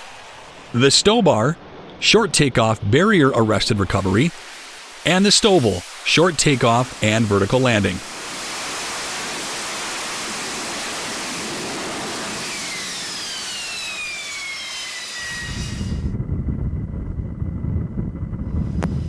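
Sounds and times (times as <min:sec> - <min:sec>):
jet engine roaring: 0:03.6 - 0:16.1
high engine whine: 0:09.0 - 0:16.1.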